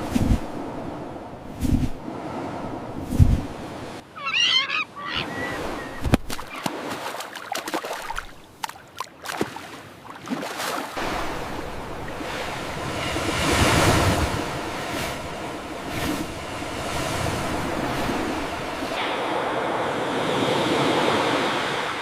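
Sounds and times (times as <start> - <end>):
surf washing ashore: 0.0 - 22.0
seagull cries: 4.1 - 6.6.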